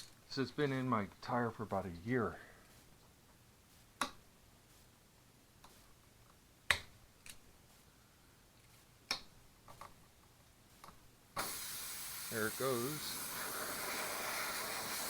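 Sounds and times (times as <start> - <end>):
air hissing from tire: 11.4 - 15.0.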